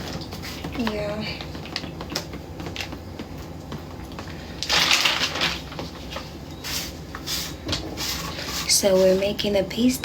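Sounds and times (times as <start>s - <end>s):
loud crinkling rustle: 4.6s - 7.0s.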